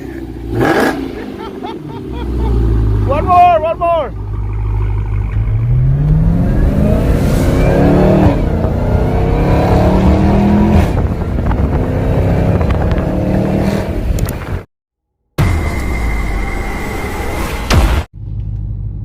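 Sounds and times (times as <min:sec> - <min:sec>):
car engine accelerating: 0:02.0 - 0:14.6.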